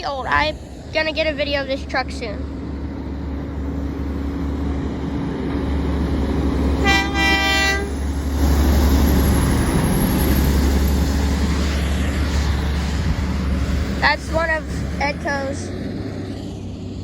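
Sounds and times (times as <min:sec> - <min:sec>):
truck engine rumble: 0:00.0 - 0:17.0
truck air horn: 0:06.8 - 0:08.1.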